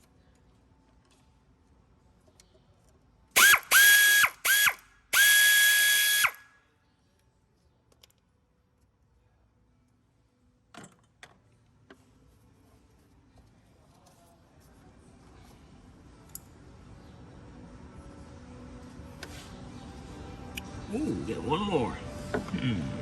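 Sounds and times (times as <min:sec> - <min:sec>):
power tool motor whining: 0:03.4 - 0:06.4.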